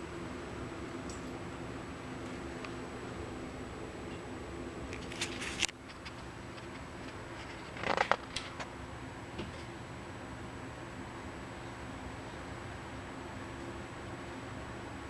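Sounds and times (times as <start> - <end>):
steady low hum: 0.0 - 15.0
paper pages rustling: 5.0 - 8.7.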